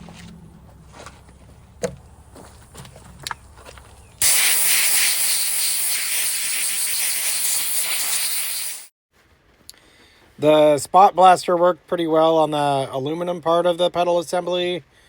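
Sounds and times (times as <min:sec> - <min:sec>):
sandblaster hissing: 0:04.2 - 0:09.0.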